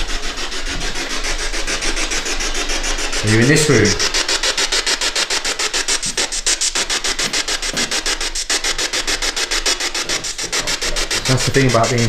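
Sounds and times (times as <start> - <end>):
choppy radio static: 3.2 - 4.1, 10.1 - 12.0.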